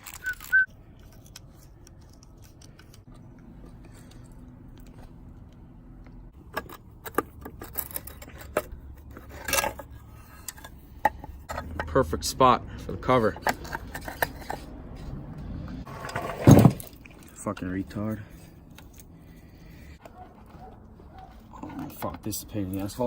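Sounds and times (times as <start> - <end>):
rustling scrape: 15.8 - 17.1.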